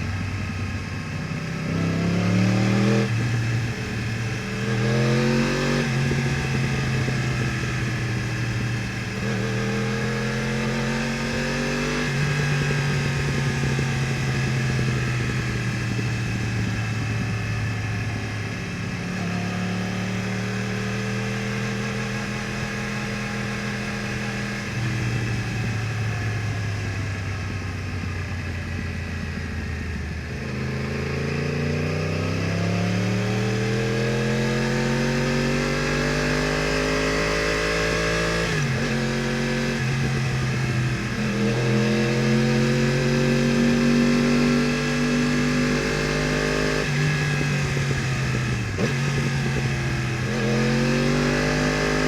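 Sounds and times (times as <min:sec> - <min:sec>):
motorcycle engine accelerating: 0:00.0 - 0:52.0.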